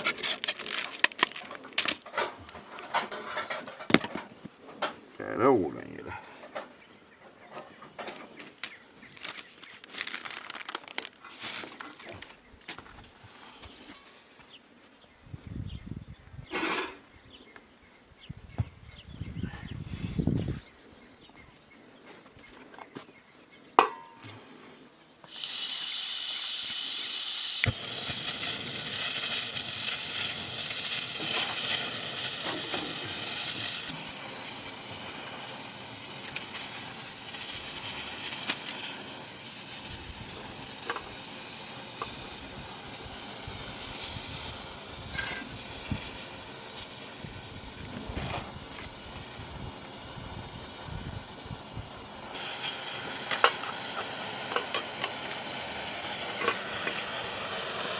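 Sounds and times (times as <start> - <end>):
steady hiss: 24.3 - 57.9.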